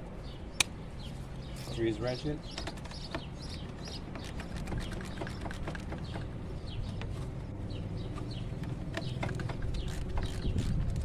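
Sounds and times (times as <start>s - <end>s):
birds chirping: 0.0s - 11.0s
ratchet clicking: 8.9s - 11.0s.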